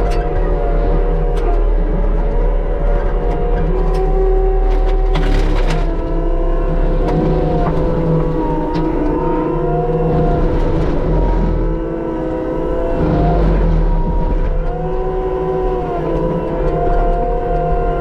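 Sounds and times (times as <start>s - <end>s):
engine drone: 0.0s - 18.0s
mulcher and hydraulics whining: 0.0s - 18.0s.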